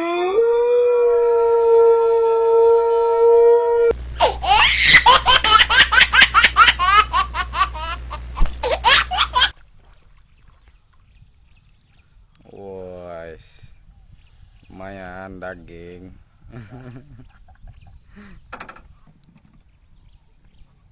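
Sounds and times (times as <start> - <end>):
long howl-like note: 0.0 - 4.0
hearty rapid laughter: 4.2 - 9.5, 16.5 - 18.4.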